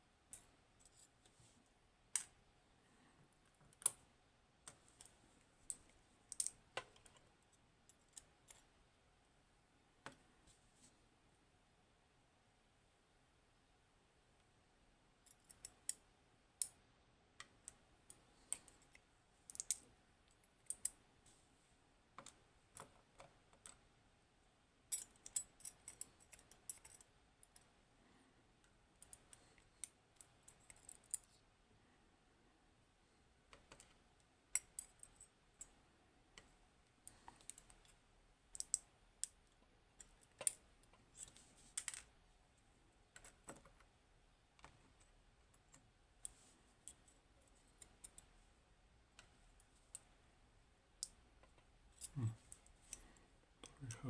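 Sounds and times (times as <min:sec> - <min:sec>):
small metallic clicks of lock parts: 0:02.1 - 0:02.4, 0:03.4 - 0:04.0, 0:04.7 - 0:08.7, 0:15.2 - 0:16.0, 0:17.4 - 0:21.0, 0:22.2 - 0:23.8, 0:24.9 - 0:27.7, 0:28.6 - 0:31.4, 0:33.5 - 0:35.8, 0:36.4 - 0:42.1, 0:44.6 - 0:48.3, 0:51.0 - 0:54.0.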